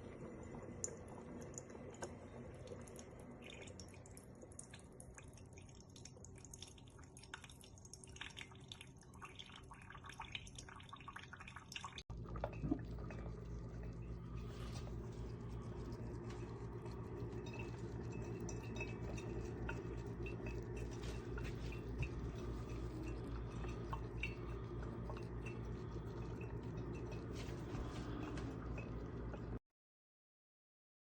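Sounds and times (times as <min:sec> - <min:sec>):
water dripping and trickling: 0:00.0 - 0:29.6
low hum: 0:12.1 - 0:29.6.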